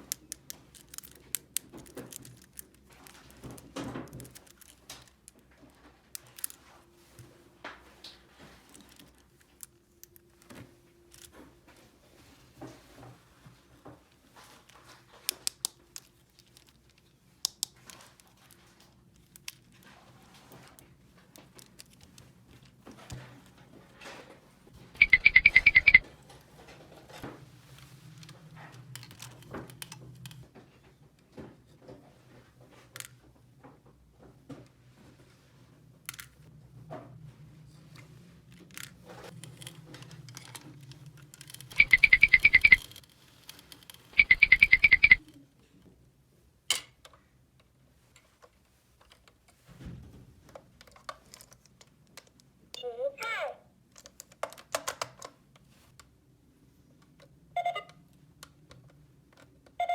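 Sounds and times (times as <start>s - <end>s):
plastic toy pieces clicking: 0.0s - 5.4s, 39.4s - 45.3s.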